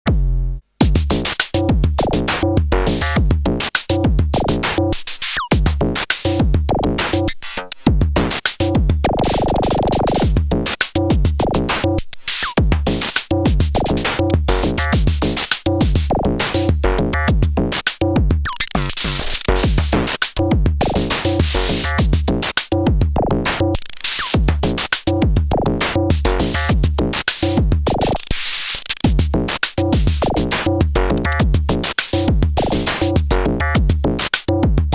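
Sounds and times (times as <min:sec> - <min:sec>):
electronic drum pattern: 0:00.0 - 0:34.9.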